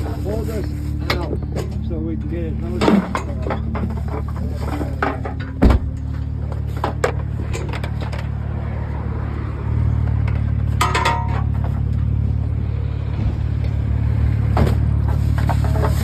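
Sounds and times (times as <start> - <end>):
vehicle engine idling: 0.0 - 16.0
scrap metal knocking and clanking: 0.9 - 8.6, 10.0 - 12.2, 14.4 - 16.0
heavy thump: 5.6 - 6.0.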